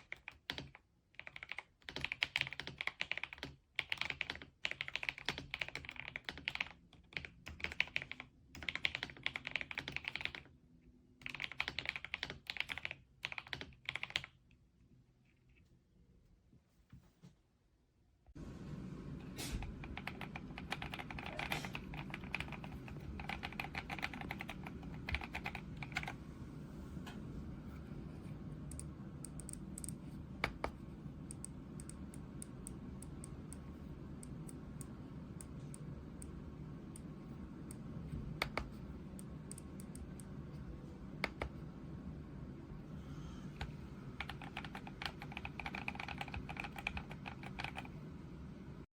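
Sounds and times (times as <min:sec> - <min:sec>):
mechanical keyboard typing: 0:00.0 - 0:10.5, 0:11.2 - 0:14.4, 0:19.8 - 0:26.2, 0:28.7 - 0:40.4, 0:43.6 - 0:47.9
low steady hum: 0:17.8 - 0:48.9.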